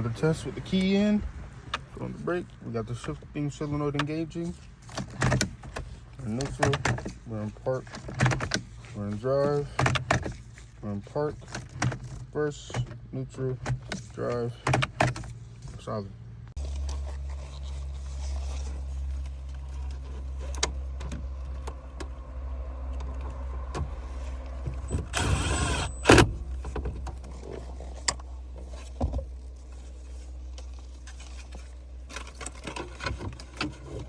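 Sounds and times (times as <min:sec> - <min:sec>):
shifter clicks and knocks: 0:00.7 - 0:16.0, 0:22.9 - 0:29.5, 0:30.5 - 0:34.0
whirring: 0:24.8 - 0:26.3.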